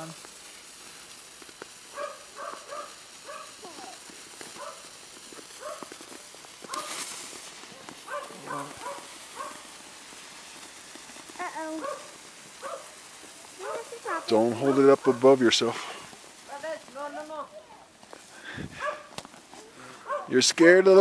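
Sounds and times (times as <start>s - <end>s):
brief hiss: 0.0s - 14.2s, 15.1s - 17.0s.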